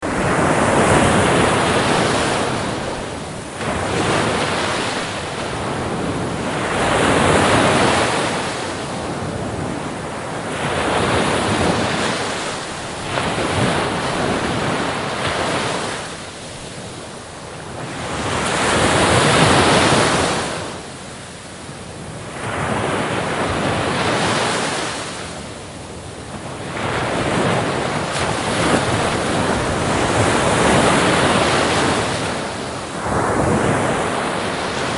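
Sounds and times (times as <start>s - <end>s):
sea waves breaking on shore: 0.0s - 34.9s.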